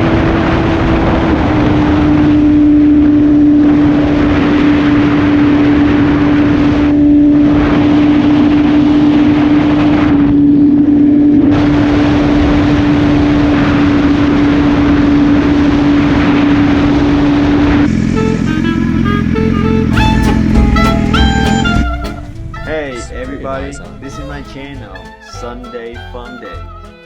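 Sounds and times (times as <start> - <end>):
wind rush: 0.0 - 22.6
motorcycle engine running: 17.8 - 24.5.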